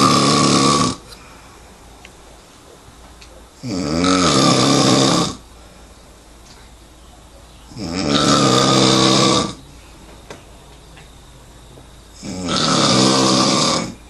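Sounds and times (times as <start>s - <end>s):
person snoring loudly: 0.0s - 1.1s, 3.6s - 5.4s, 7.7s - 9.6s, 12.2s - 14.0s.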